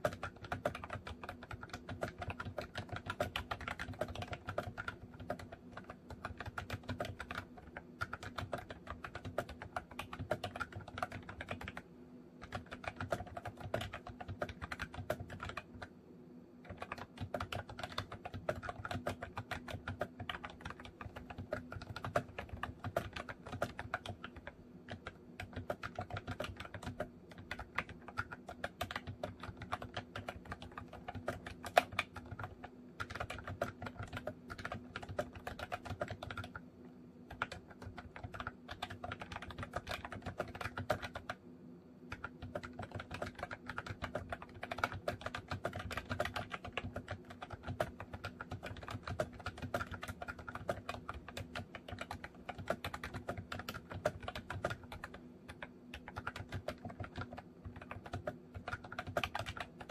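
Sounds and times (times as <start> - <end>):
keyboard typing clicks: 0.0 - 11.8, 12.4 - 15.9, 16.6 - 36.6, 37.3 - 41.4, 42.0 - 59.9.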